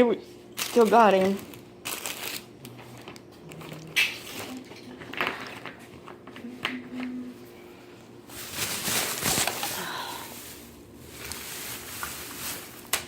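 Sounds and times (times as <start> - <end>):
faint steady hum: 0.0 - 13.0
rustling in a shopping bag: 0.6 - 3.0, 8.2 - 13.0.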